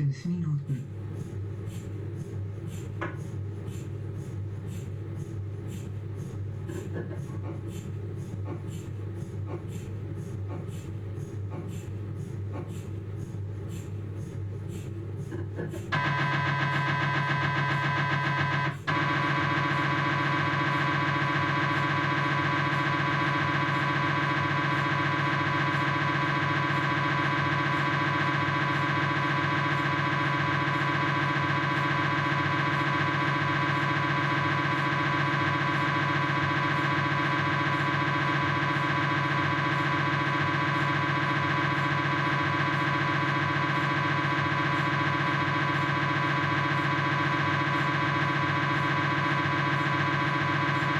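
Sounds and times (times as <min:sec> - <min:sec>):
mri scanner pulsing buzz: 0:00.5 - 0:50.9.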